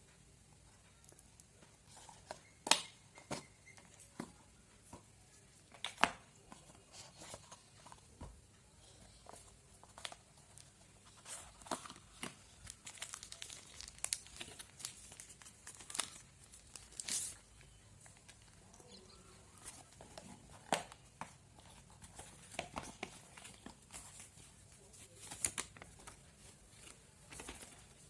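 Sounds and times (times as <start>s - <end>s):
plastic crinkling: 9.2s - 21.0s.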